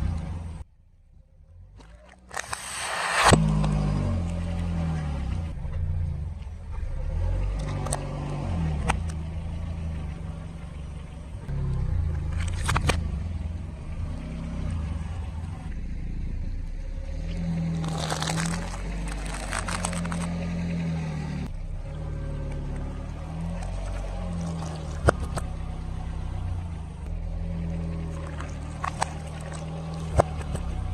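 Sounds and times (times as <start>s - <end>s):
car engine running: 0.0s - 30.9s
objects cracking under tyre: 11.6s - 13.3s, 17.2s - 21.0s, 22.5s - 27.1s, 27.9s - 30.9s.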